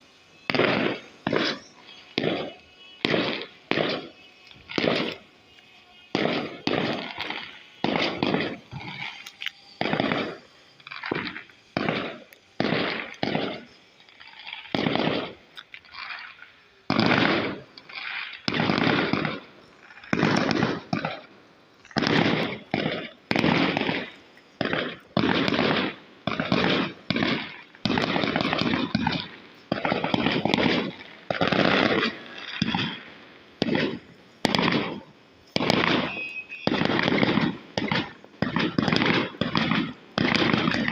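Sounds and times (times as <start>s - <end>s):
fireworks bangs: 0.0s - 40.9s.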